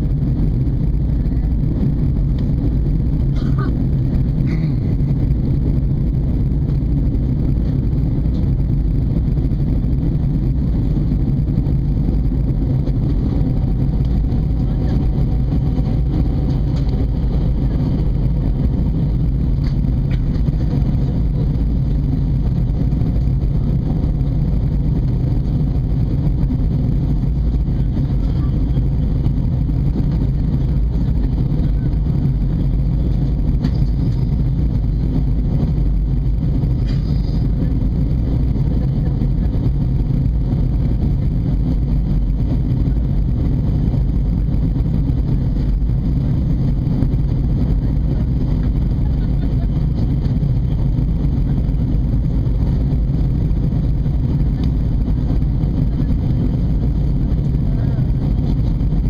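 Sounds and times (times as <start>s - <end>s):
faint steady whine: 0.0s - 59.0s
jet engines roaring: 0.0s - 59.0s
rushing air: 0.0s - 59.0s.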